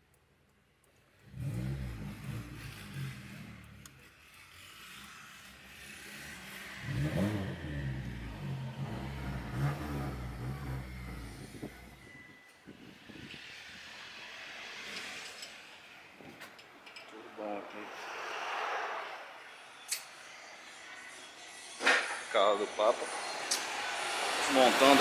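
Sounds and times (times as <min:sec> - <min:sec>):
car engine revving: 0:01.2 - 0:15.7, 0:22.7 - 0:25.0.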